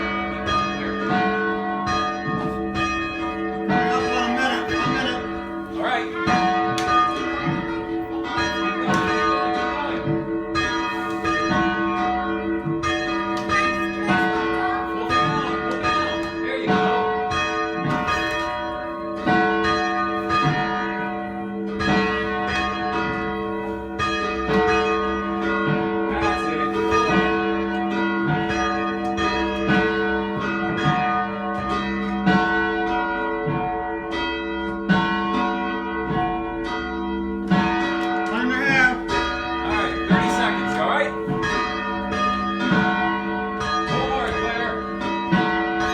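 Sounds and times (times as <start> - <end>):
church bells ringing: 0.0 - 45.9.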